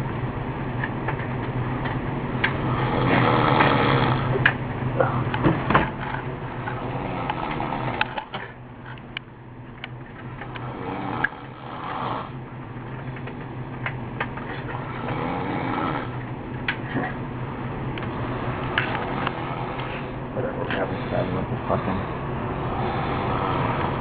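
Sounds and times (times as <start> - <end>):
steady low hum: 0.0 - 24.0
person snoring: 2.6 - 4.4, 6.8 - 8.1, 10.6 - 12.4, 14.7 - 16.2, 18.1 - 24.0.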